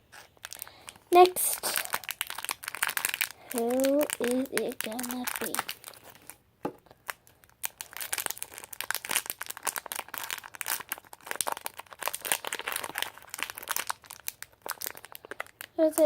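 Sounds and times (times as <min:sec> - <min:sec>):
plastic bag crinkling and tearing: 0:00.0 - 0:16.0.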